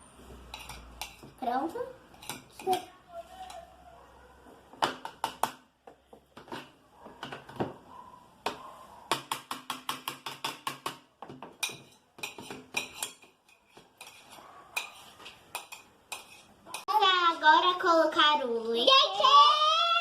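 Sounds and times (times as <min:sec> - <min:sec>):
spoon tapping and scraping container: 0:00.4 - 0:01.4, 0:04.8 - 0:07.7, 0:08.5 - 0:16.9.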